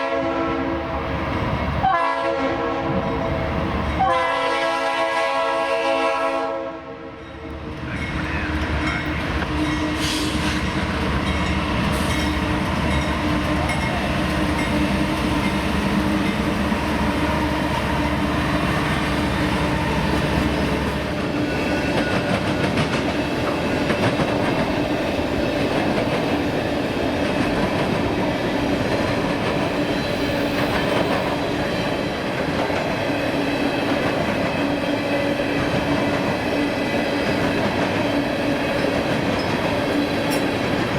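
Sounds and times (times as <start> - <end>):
locomotive engine rumble: 7.7 - 26.2
train wheels clattering over rails: 7.8 - 40.9.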